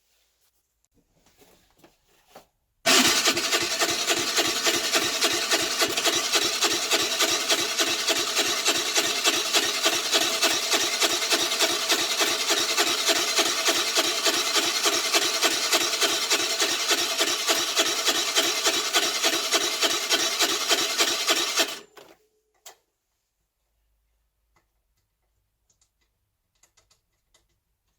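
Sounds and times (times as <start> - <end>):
scooter engine cranking: 2.9 - 22.1.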